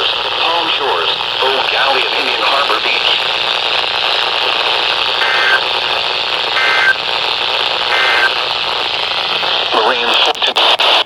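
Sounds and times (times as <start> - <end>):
radio static hiss: 0.0 - 11.0
alert data bursts: 5.2 - 5.6, 6.6 - 7.0, 7.9 - 8.4.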